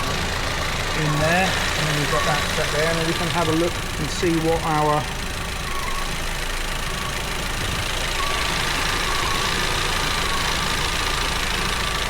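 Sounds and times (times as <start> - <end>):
misfiring car engine idling: 0.0 - 12.0.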